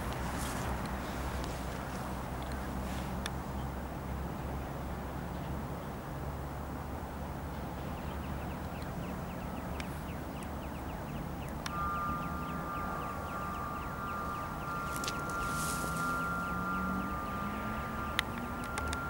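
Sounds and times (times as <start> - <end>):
distant propeller plane engine drone: 0.0 - 19.0
light chirps: 8.0 - 19.0
high two-note tone: 11.6 - 19.0.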